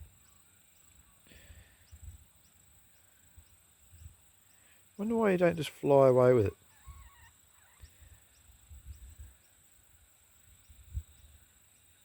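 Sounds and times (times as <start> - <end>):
faint regular chirp: 0.0 - 4.9, 6.5 - 9.8
insects droning: 0.0 - 12.0.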